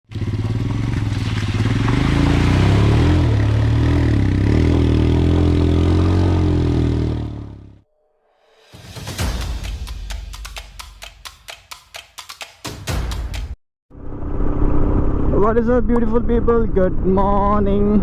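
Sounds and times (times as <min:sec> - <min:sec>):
motorcycle engine revving: 0:00.1 - 0:07.8.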